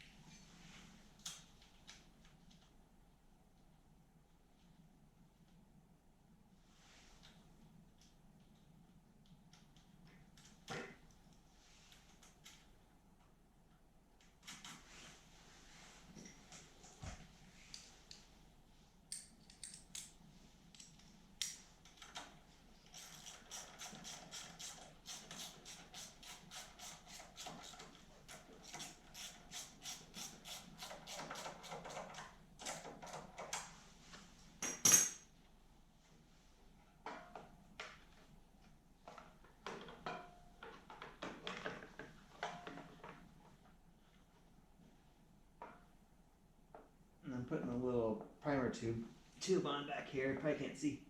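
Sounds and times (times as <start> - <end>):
metal parts clicking and clinking: 19.1 - 21.6.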